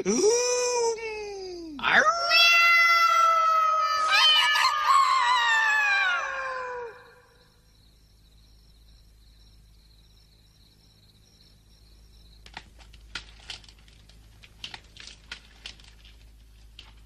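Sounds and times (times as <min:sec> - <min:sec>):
light clicks and rustles: 0:12.4 - 0:17.0.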